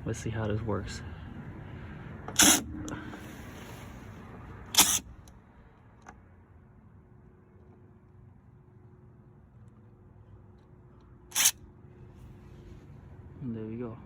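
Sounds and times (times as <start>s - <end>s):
cordless drill whirring: 2.3s - 2.6s, 4.7s - 5.1s, 11.3s - 11.6s.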